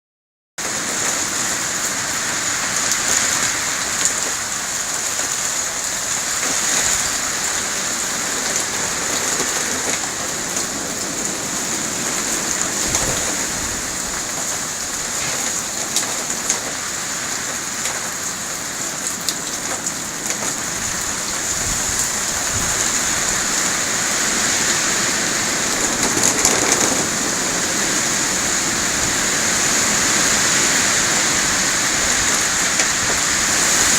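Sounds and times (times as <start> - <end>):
wind-driven rain falling: 0.6 - 33.9
raindrops clicking: 25.4 - 27.9.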